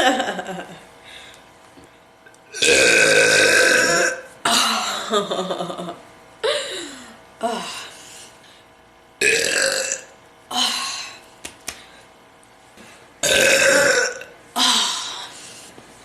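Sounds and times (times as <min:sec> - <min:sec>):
woman burping: 0:02.5 - 0:05.1, 0:09.2 - 0:11.1, 0:13.2 - 0:15.1.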